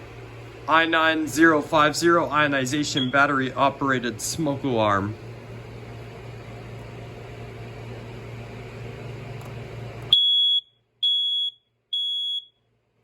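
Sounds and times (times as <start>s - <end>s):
low hum and hiss: 0.0s - 13.0s
smoke alarm beeps: 3.0s - 3.2s, 10.1s - 12.6s.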